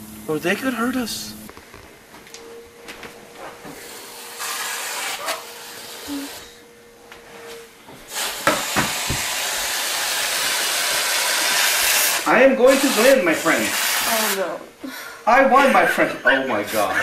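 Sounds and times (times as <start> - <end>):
aerosol can hissing: 3.8 - 6.5, 8.1 - 14.5.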